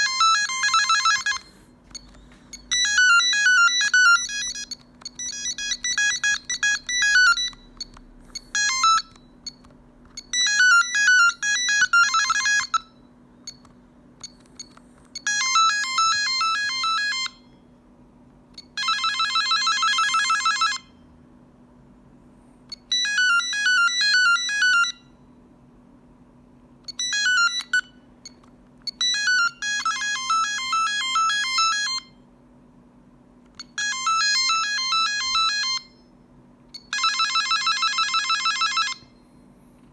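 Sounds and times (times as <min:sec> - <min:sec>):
short beeping ringtone melodies: 0:00.0 - 0:09.6.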